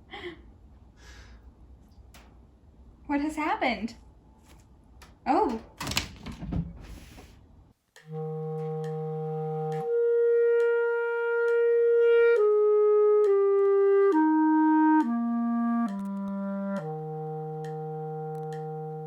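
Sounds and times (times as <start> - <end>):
clarinet playing sustained notes: 8.0 - 19.0.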